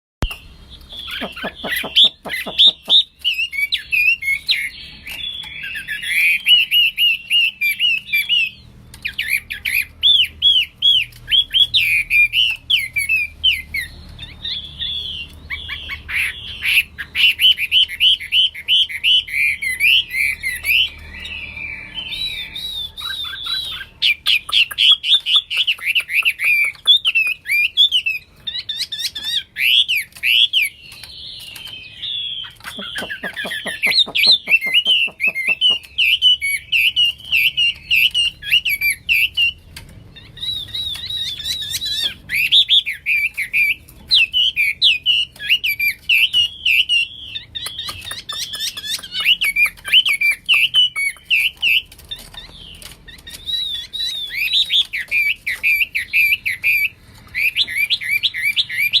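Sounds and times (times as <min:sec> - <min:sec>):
bird singing whistled notes: 0:00.2 - 0:51.9, 0:53.2 - 0:59.0.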